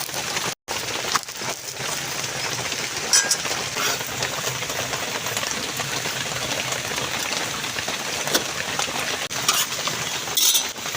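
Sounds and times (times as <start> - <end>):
food sizzling in oil: 0.0 - 10.9.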